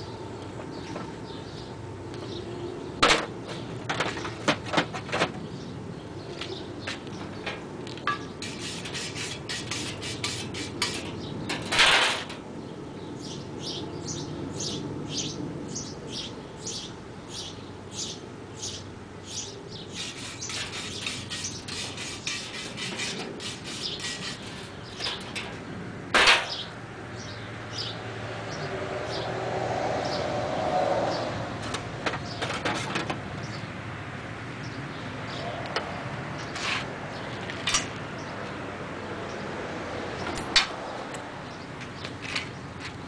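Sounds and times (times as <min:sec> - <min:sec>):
short even scraping strokes: 0:08.4 - 0:11.1, 0:19.9 - 0:25.2.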